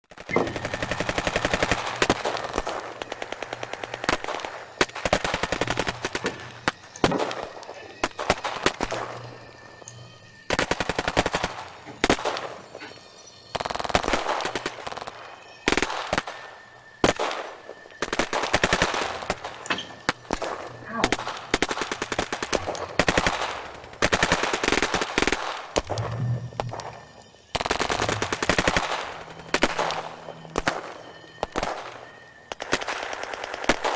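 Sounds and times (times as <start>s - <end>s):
machine-gun fire bursts: 0.1s - 7.5s.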